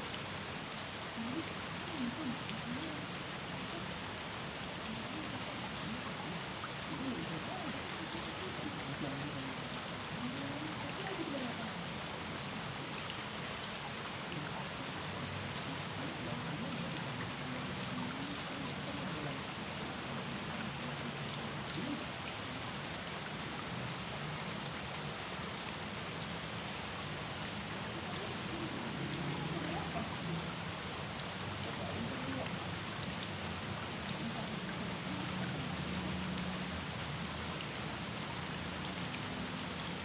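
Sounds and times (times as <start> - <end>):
rain falling on pond: 0.0 - 40.0.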